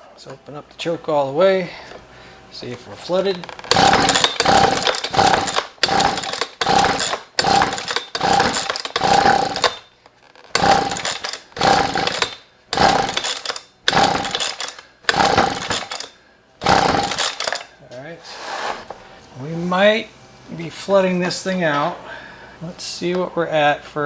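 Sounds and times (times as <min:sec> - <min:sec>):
pull-cord starter cranking engine: 0:03.2 - 0:17.7.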